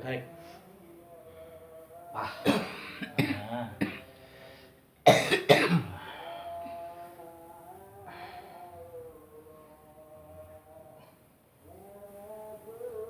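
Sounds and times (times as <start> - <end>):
man coughing: 2.4 - 4.0, 5.1 - 6.0.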